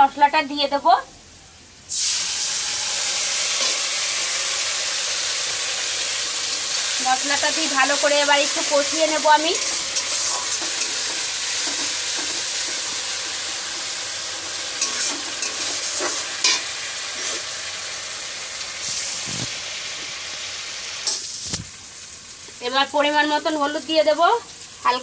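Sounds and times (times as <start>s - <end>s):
spice paste sizzling in oil: 1.9s - 25.0s
spatula scraping a pan: 9.5s - 13.9s, 14.8s - 17.5s.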